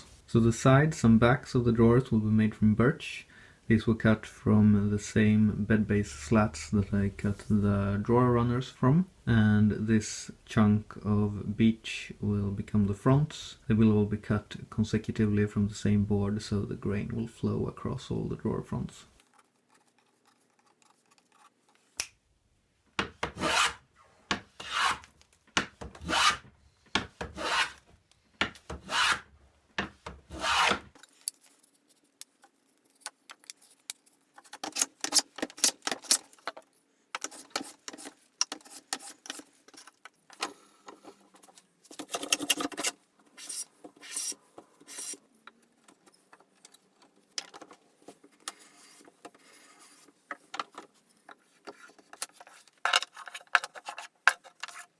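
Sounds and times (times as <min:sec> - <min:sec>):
light scraping and rubbing: 0:19.1 - 0:22.0, 0:30.4 - 0:54.9
hand tool rasping wood: 0:26.0 - 0:26.4, 0:27.3 - 0:27.8, 0:28.8 - 0:29.2, 0:30.4 - 0:41.1, 0:41.9 - 0:45.2.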